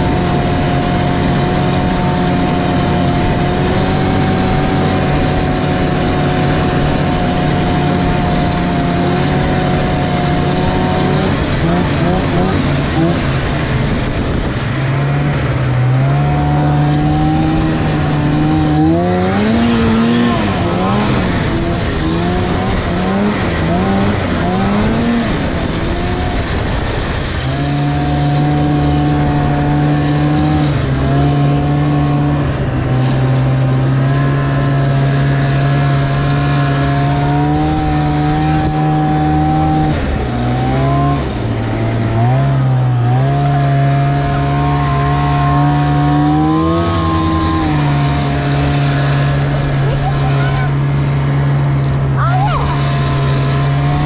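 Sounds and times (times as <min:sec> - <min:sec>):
snowmobile engine running hard: 0:00.0 - 0:54.0.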